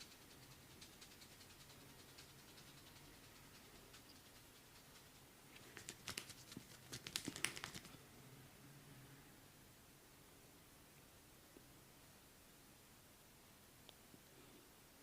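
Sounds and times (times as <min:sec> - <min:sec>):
hands patting and rubbing skin: 0:03.9 - 0:08.0.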